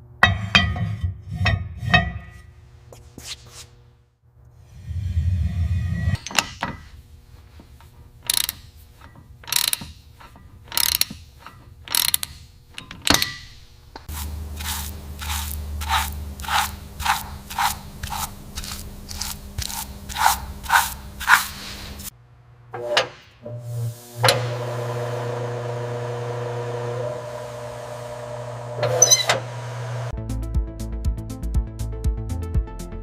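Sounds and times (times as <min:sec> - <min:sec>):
ratchet wrench clicking: 0:08.2 - 0:13.5.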